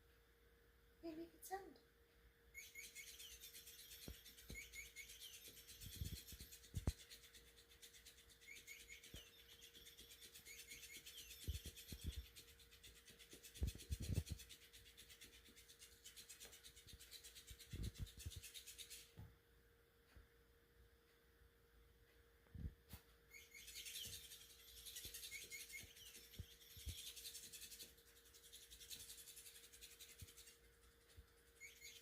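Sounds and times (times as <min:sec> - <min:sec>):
electronic toy chirping: 0:02.6 - 0:14.6, 0:23.3 - 0:30.5, 0:31.6 - 0:32.0
toy handling thuds and rubbing: 0:03.0 - 0:19.4.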